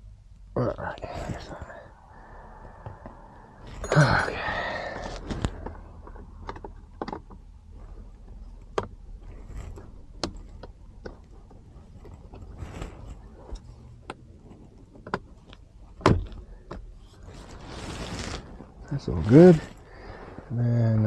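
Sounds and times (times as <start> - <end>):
car parts clicking and knocking: 5.1 - 17.2.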